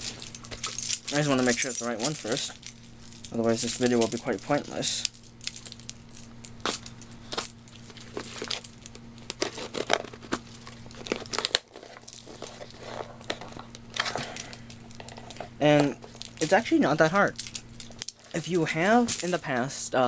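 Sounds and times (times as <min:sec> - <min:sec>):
low electrical hum: 0:00.0 - 0:20.0
packaging crinkled and torn: 0:06.6 - 0:16.7.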